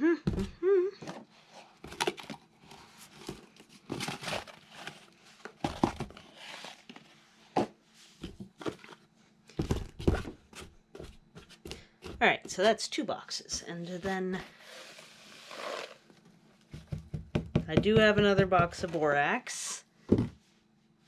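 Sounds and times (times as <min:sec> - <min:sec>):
cardboard crinkling and rustling: 0:01.1 - 0:07.6.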